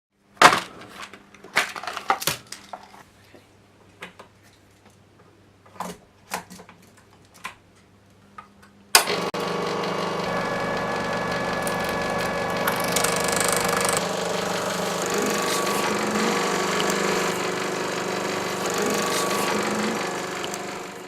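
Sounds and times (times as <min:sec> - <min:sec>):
loud mechanical whirring: 0:09.0 - 0:21.0.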